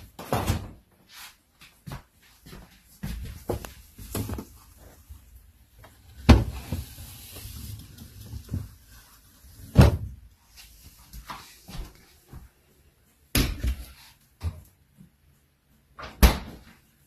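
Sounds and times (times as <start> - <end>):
faint hiss: 4.6 - 9.7.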